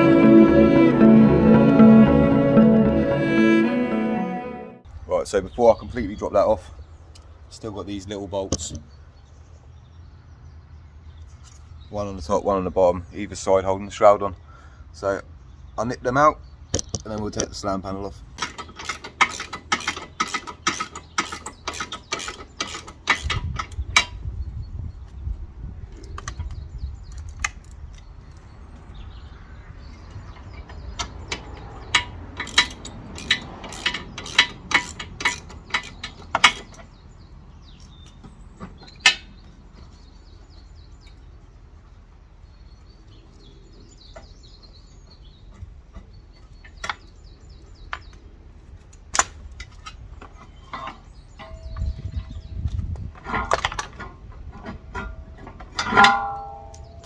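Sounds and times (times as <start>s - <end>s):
socket ratchet clicking: 18.4s - 24.1s, 31.0s - 36.7s.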